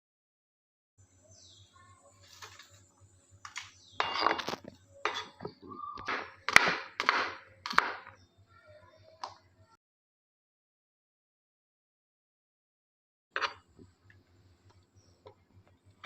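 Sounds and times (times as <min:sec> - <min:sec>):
utensils and dishes clattering: 0:04.0 - 0:06.8, 0:13.4 - 0:13.7
faint low hum: 0:13.4 - 0:16.0.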